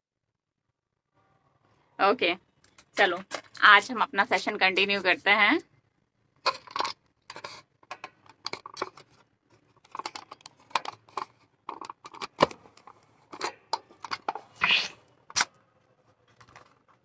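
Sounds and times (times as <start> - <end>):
objects clicking and tapping: 6.5 - 15.6.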